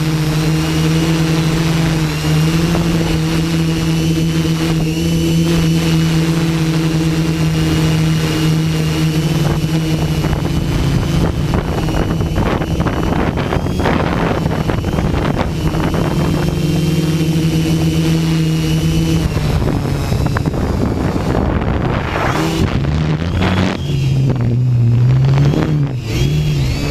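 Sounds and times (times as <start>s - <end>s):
drone motors humming: 0.0s - 26.9s
wind buffeting microphone: 0.0s - 26.9s.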